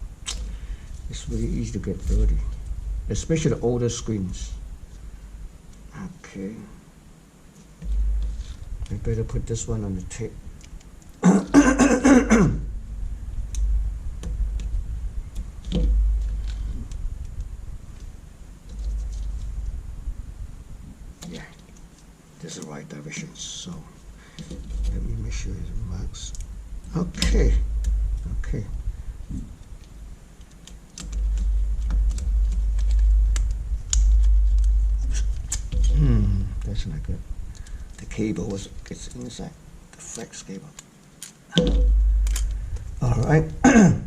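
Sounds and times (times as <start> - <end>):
loud low rumble: 0.0 - 5.6, 12.4 - 18.3, 31.2 - 37.6, 41.6 - 43.6
low handling bumps: 7.7 - 10.3, 11.4 - 21.5, 24.0 - 30.1, 30.7 - 39.2, 41.5 - 43.7
man clearing his throat: 11.2 - 12.7, 35.9 - 36.5, 43.6 - 44.0
small parts clicking and tapping: 29.3 - 36.7, 37.5 - 42.9.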